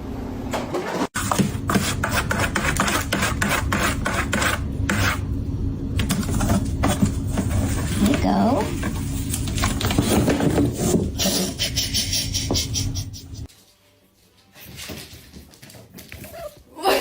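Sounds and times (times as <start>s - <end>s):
rasping scrapes: 1.2s - 5.2s.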